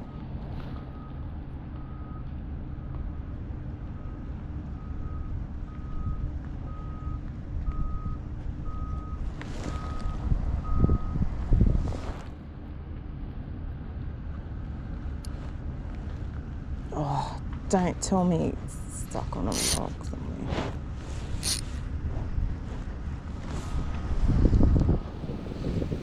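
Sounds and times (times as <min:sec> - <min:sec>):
low engine rumble: 0:00.0 - 0:26.0
reversing alarm beeping: 0:01.8 - 0:03.0, 0:04.0 - 0:11.2.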